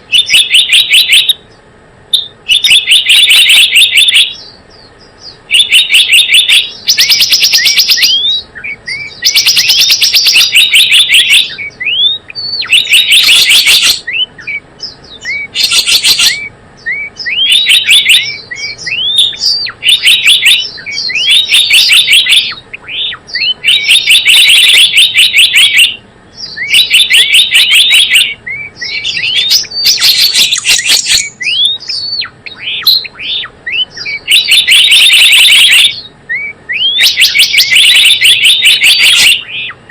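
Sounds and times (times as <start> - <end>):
bird chirping rapidly: 0.0 - 39.9.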